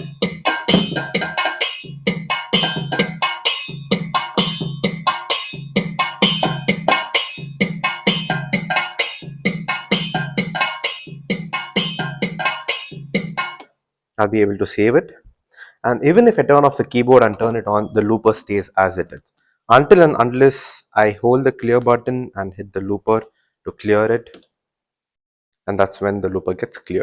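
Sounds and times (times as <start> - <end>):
keyboard drum loop: 0.0 - 13.6.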